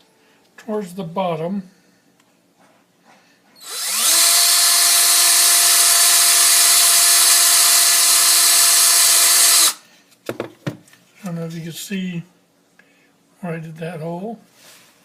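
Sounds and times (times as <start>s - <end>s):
electric drill drilling: 3.6s - 9.8s.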